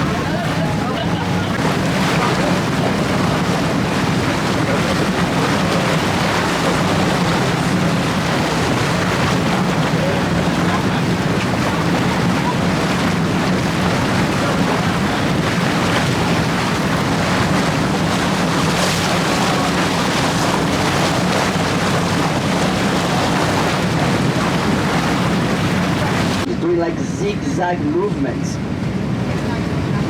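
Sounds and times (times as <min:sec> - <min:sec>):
wind buffeting microphone: 0:00.0 - 0:26.5
low engine hum: 0:00.0 - 0:30.0
water rushing: 0:00.0 - 0:30.0.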